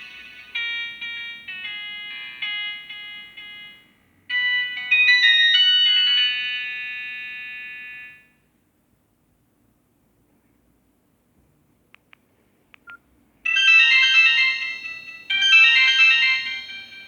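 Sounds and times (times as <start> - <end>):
phone ringtone melody: 0.0 - 7.2, 13.5 - 17.0.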